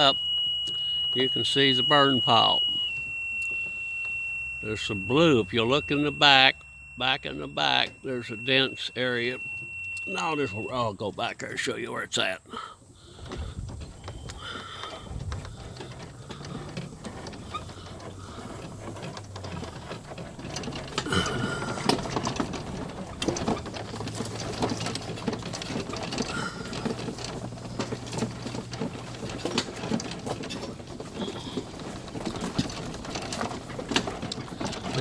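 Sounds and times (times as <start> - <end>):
golf cart motor hum: 0.0 - 11.3, 12.9 - 35.0
cart rattling and knocking: 13.2 - 35.0.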